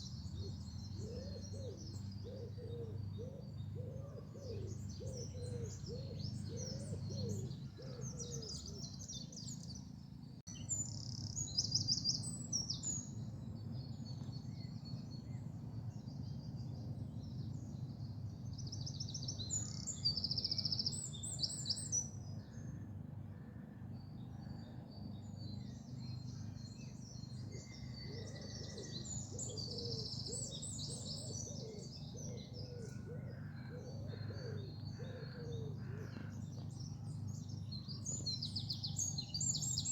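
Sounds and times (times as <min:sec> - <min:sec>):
songbirds singing and twittering: 0:00.0 - 0:39.9
low repeated cooing: 0:00.4 - 0:08.9, 0:27.5 - 0:36.4.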